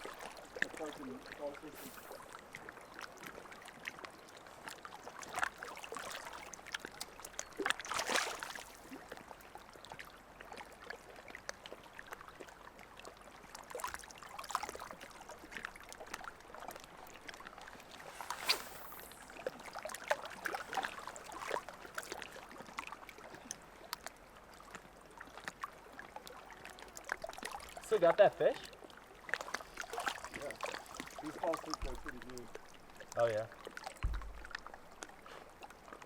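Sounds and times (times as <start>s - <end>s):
small splashes and clicks: 0.0s - 36.0s
water trickling at shore: 0.0s - 36.0s
loud water splashes: 7.9s - 8.7s, 17.7s - 21.6s.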